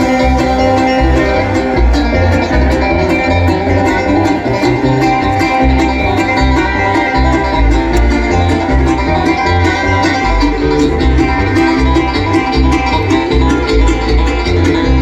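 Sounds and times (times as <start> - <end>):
banjo and guitar picking: 0.0 - 15.0
pulsing bass: 0.0 - 15.0.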